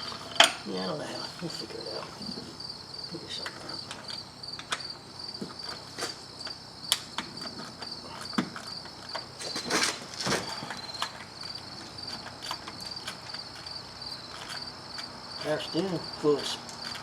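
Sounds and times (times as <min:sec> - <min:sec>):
hand tools clicking and knocking: 0:00.0 - 0:00.6, 0:03.4 - 0:17.0
crickets chirping: 0:00.0 - 0:17.0
scraping and rustling: 0:07.3 - 0:14.7.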